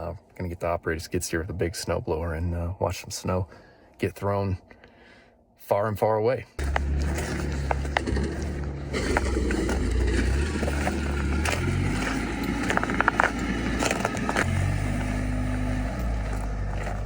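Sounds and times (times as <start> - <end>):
diesel engine running: 6.6 - 17.0.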